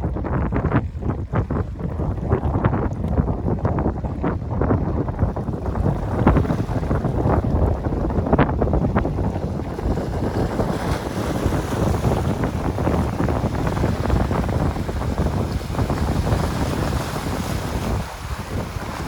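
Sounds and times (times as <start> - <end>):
wind buffeting microphone: 0.0 - 19.0.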